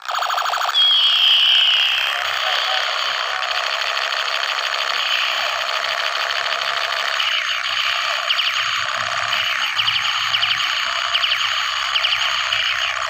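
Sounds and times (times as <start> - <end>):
toy gun buzzing rattle: 0.0 - 13.0
falling electronic tone: 0.7 - 3.4, 6.7 - 13.0.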